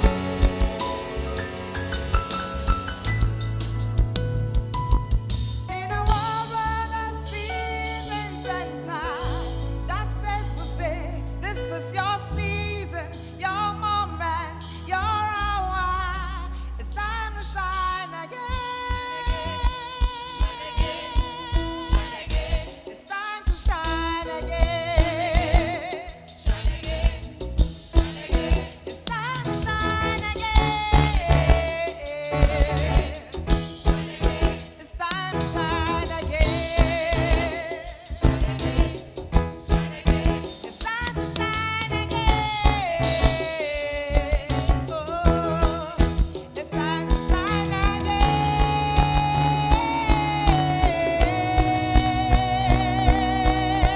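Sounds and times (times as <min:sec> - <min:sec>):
gospel singing: 0:00.0 - 0:04.2, 0:05.3 - 0:53.9
drums steady beat: 0:00.0 - 0:07.6, 0:17.7 - 0:53.9
long held bass notes: 0:00.0 - 0:17.8, 0:29.4 - 0:34.7, 0:35.4 - 0:53.9.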